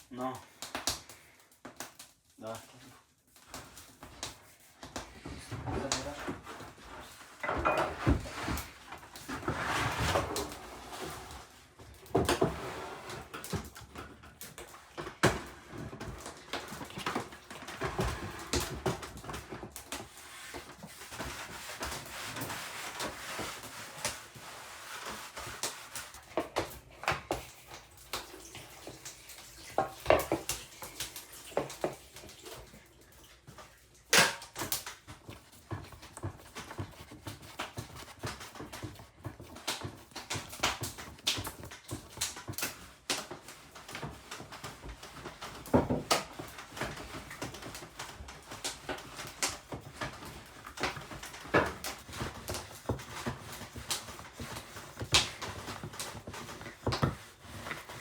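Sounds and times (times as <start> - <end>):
soft scraping and rubbing: 4.4 - 11.7
dishes and utensils clinking: 7.4 - 8.2.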